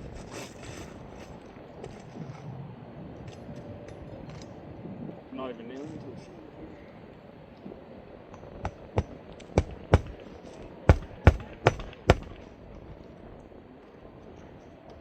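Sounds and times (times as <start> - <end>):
hammer driving nails into shingle: 8.6 - 10.3, 10.9 - 12.5.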